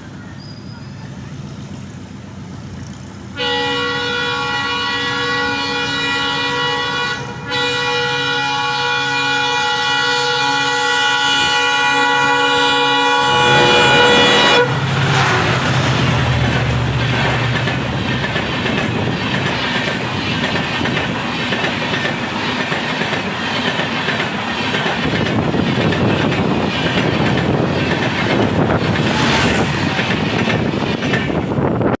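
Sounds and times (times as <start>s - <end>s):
locomotive horn chord: 3.3s - 15.7s
wheels clattering over rail joints: 14.0s - 31.6s.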